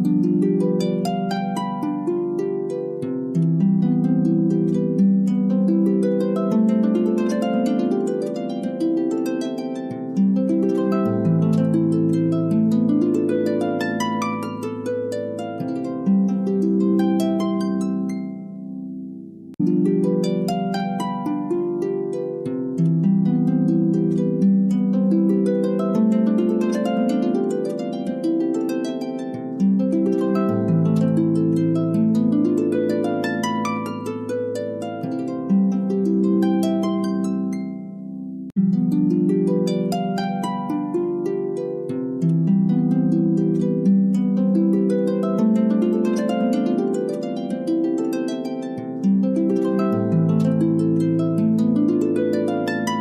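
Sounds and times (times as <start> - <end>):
harp plucked notes: 0.0 - 53.0.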